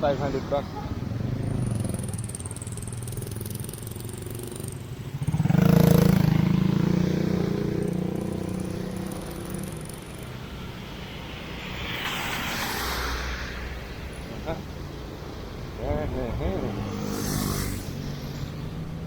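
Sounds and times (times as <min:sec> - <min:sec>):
low traffic hum: 0:00.0 - 0:19.0
vehicle engine passing by: 0:16.1 - 0:19.0.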